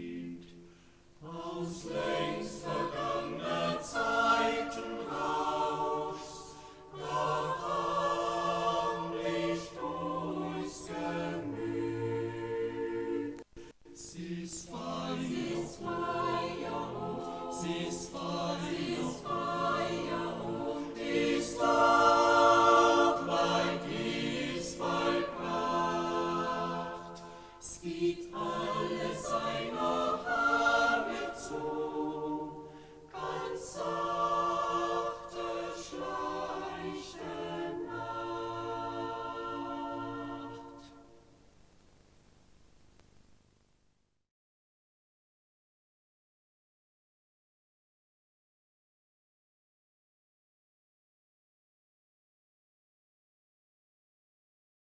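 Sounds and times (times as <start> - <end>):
choir singing a cappella: 0.0 - 41.4.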